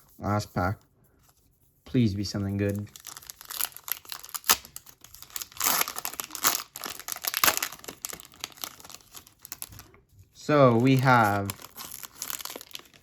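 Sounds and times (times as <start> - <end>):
wrapper tearing and crinkling: 2.7 - 9.9, 10.7 - 13.0.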